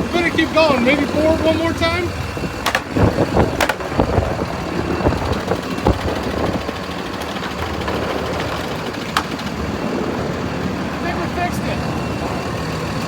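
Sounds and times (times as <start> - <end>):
vehicle engine running slowly: 0.0 - 13.0
sharp clicks and knocks: 2.6 - 4.1, 7.2 - 9.5.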